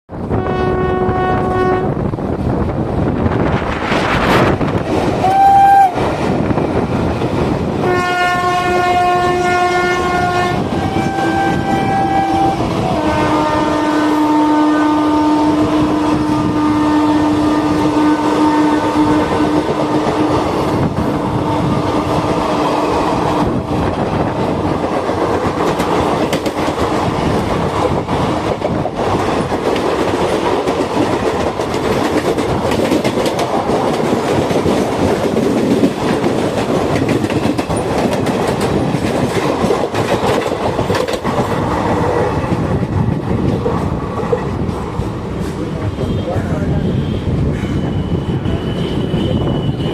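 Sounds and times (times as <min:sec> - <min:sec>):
locomotive horn blasts: 0:00.3 - 0:02.0, 0:07.8 - 0:20.3, 0:45.8 - 0:49.9
train wheels clattering on rails: 0:18.9 - 0:49.9.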